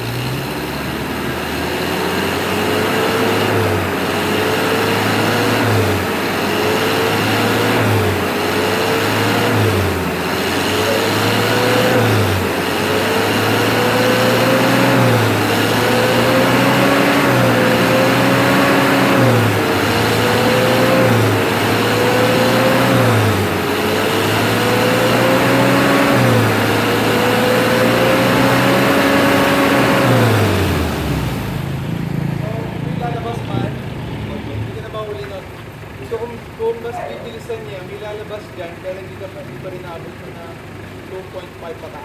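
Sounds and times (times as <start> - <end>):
diesel engine free-revving: 0.0 - 42.0.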